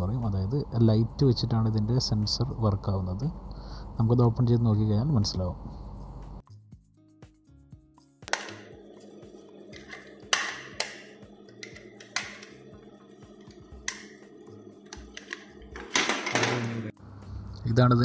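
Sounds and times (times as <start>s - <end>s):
background music: 4.5s - 18.0s.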